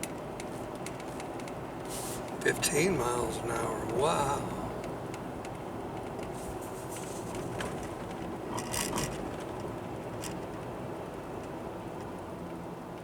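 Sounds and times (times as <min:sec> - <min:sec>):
car engine and tyre rumble: 0:00.0 - 0:13.0.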